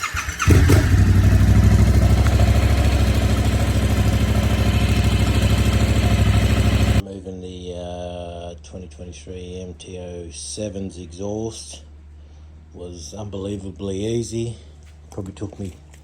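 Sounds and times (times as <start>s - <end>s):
motorcycle engine idling: 0.0s - 7.0s.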